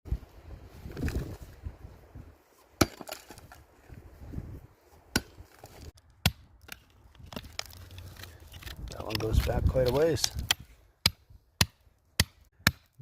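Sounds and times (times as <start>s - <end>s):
hand tool striking rock: 2.8s - 3.4s, 5.1s - 7.7s, 8.6s - 13.0s.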